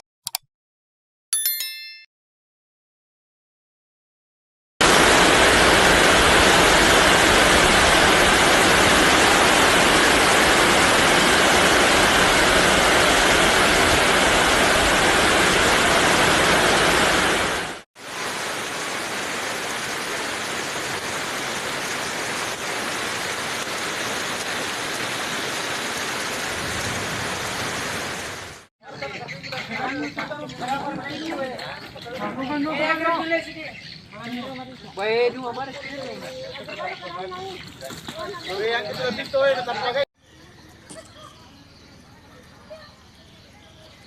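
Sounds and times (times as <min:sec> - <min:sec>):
strong wind: 0:04.8 - 0:18.6
heavy rain: 0:04.8 - 0:28.7.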